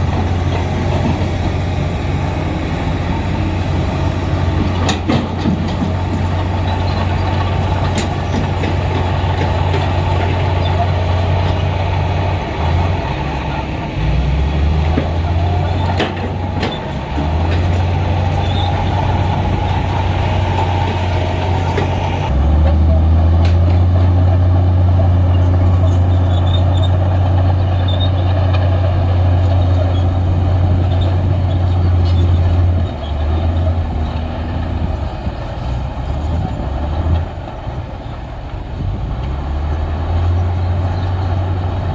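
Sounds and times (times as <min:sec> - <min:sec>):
heavy diesel machinery drone: 0:00.0 - 0:41.9.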